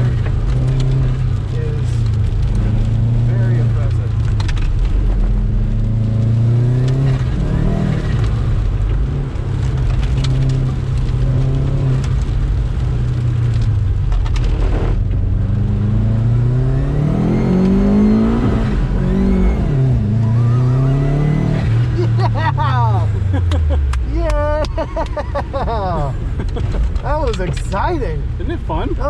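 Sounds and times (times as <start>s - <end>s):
car engine revving hard: 5.2s - 8.4s, 14.5s - 23.9s.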